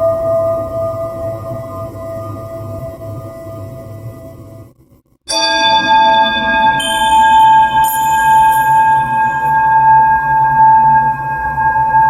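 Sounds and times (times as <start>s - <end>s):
sustained ambient tone: 5.3s - 12.0s.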